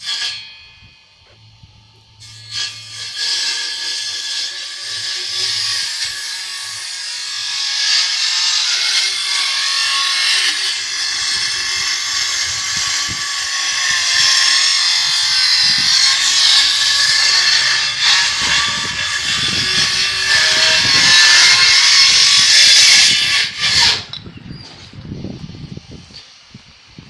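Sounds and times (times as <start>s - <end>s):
high-pitched whining tones: 10.6s - 26.1s.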